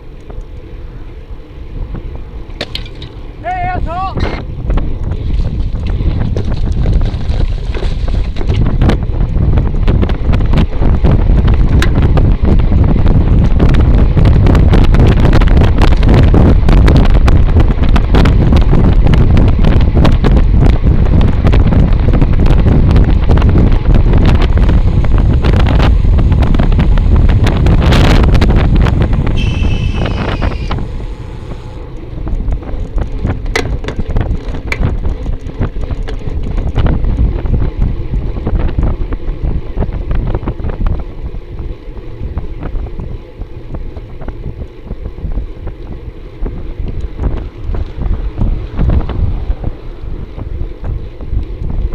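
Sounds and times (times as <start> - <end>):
road rumble: 0.0 - 51.9
wind buffeting microphone: 0.0 - 51.9
high falling squeal: 29.2 - 31.7.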